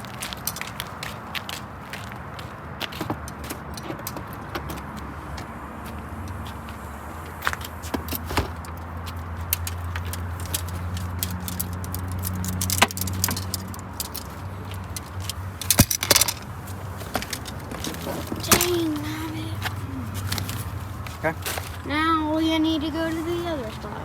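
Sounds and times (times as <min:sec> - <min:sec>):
car engine and road noise: 0:00.0 - 0:24.0
loose items rattling: 0:09.4 - 0:19.1.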